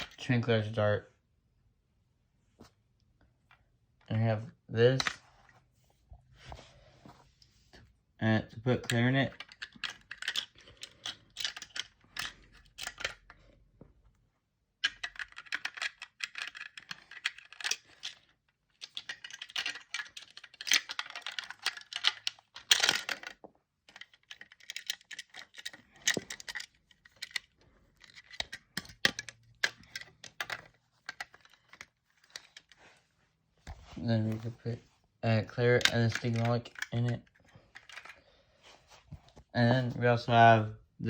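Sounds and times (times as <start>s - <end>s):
plastic bricks clicking and rattling: 8.8s - 13.5s, 14.8s - 32.8s, 35.5s - 38.2s.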